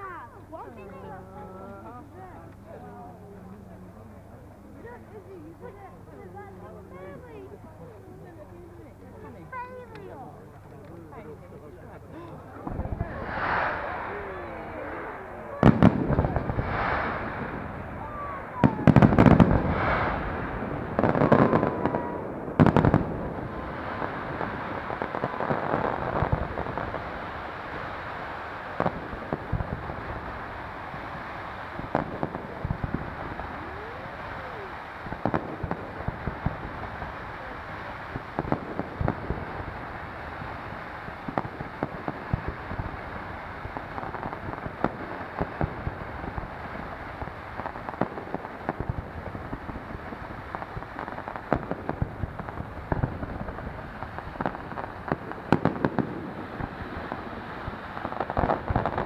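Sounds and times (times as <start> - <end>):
background rumble: 0.0 - 59.0
fireworks banging and popping: 0.0 - 59.0
firework whistle: 13.0 - 22.3.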